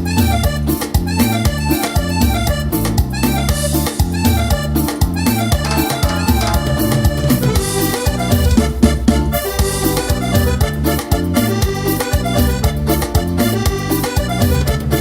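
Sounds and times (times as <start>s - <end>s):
accordion lead: 0.0s - 15.0s
bass: 0.0s - 15.0s
drum kit beat: 5.6s - 11.8s.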